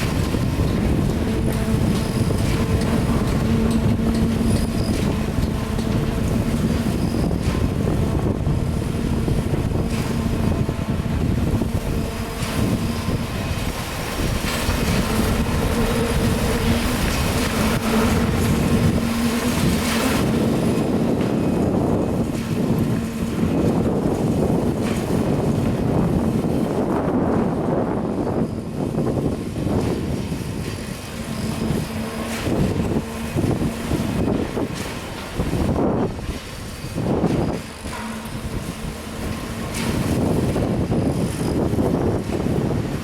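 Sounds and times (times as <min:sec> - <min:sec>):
construction machinery humming: 0:00.0 - 0:43.0
wind on microphone: 0:00.0 - 0:43.0.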